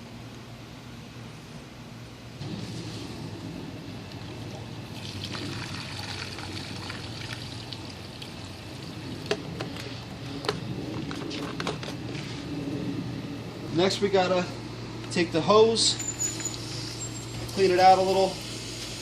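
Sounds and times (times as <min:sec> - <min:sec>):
oil pouring and trickling: 0:02.4 - 0:12.4.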